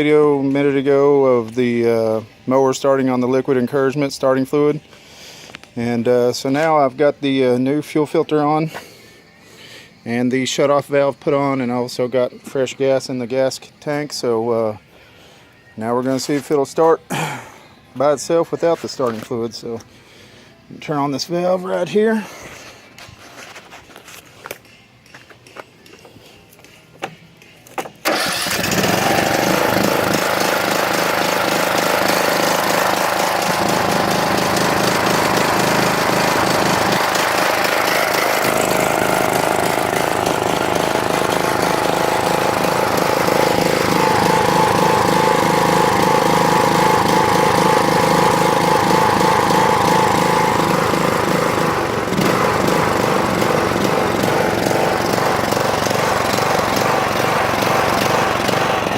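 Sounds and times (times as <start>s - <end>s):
riding mower engine running: 0.0s - 11.4s, 27.6s - 58.9s.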